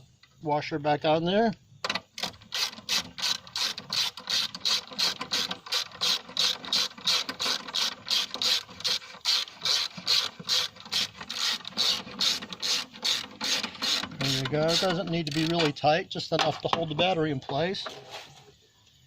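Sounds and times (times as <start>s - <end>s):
ratchet wrench clicking: 2.2s - 15.8s.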